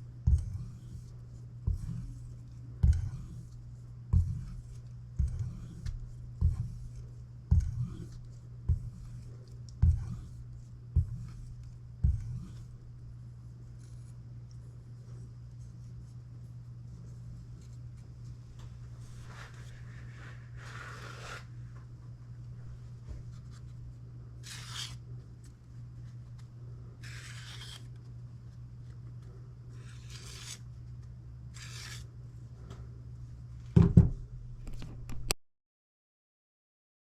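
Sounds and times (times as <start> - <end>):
steady low hum: 0.0 - 35.3
knife strokes with dull thumps: 0.2 - 12.8.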